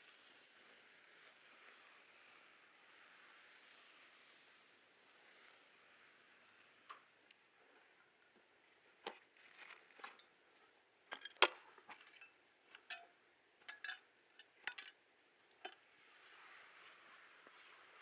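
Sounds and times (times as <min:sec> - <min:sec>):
clicks and taps of small objects: 0:11.1 - 0:15.8.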